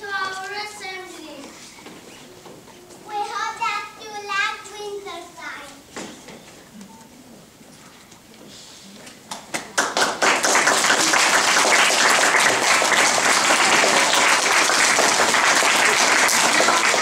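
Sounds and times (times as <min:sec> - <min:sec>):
audience applauding: 0:09.3 - 0:17.0.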